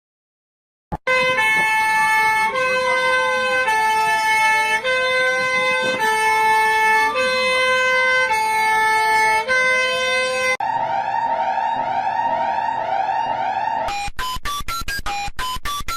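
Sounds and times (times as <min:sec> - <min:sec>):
siren wail: 0:01.1 - 0:14.1
two-tone alarm: 0:01.1 - 0:15.9.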